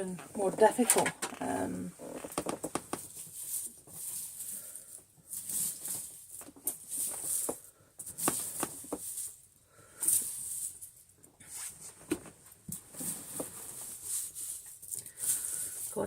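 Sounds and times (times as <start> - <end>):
dry food crunching on carpet: 2.0 - 11.0.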